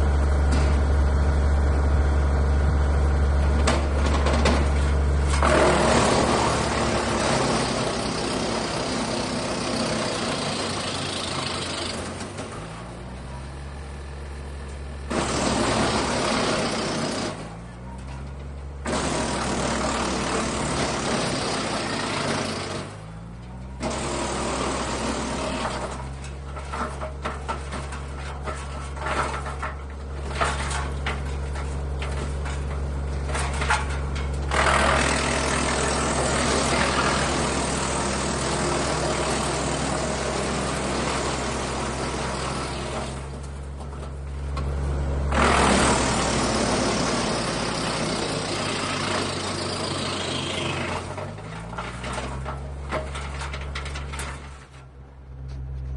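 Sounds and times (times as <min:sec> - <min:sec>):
tractor engine humming: 0:00.0 - 0:55.9
wood chipper grinding wood: 0:00.0 - 0:55.9.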